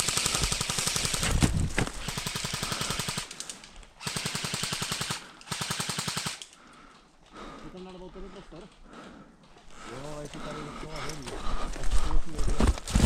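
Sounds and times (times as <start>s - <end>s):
airsoft guns firing full-auto: 0.0s - 1.3s, 2.0s - 6.6s.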